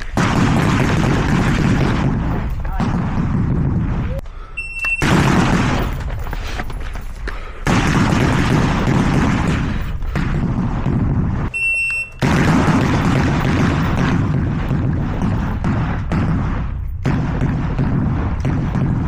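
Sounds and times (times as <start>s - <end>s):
rifle fire: 0.0s - 4.1s, 5.0s - 6.1s, 7.6s - 11.5s, 12.2s - 19.0s
high electronic beep: 4.6s - 5.1s, 11.5s - 12.2s.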